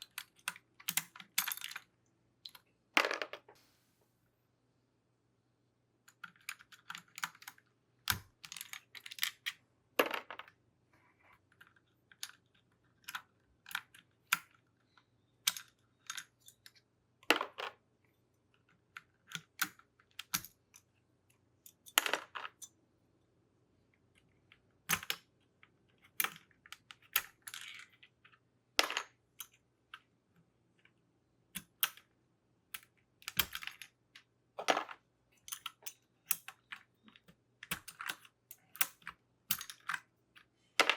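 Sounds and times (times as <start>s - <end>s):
plastic keycaps clicking: 35.5s - 40.0s.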